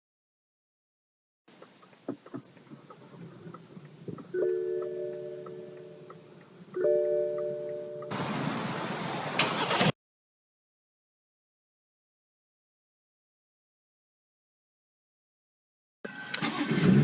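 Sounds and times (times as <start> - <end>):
car warning chime: 4.3 - 8.2, 16.1 - 16.9.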